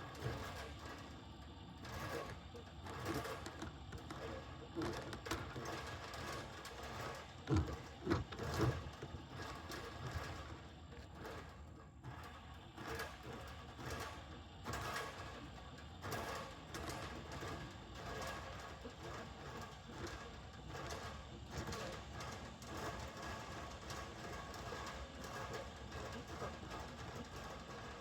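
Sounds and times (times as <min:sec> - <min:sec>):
cable knocking and clattering: 0:02.9 - 0:10.3.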